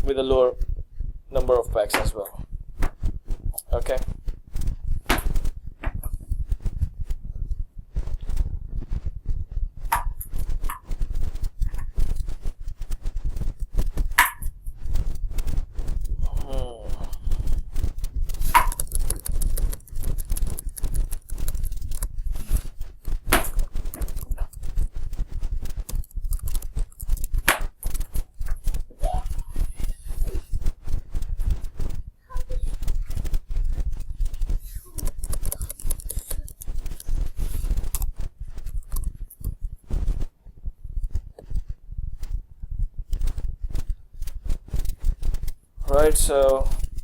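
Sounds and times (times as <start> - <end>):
rapid clicking and tapping: 9.8 - 40.4, 41.0 - 47.0.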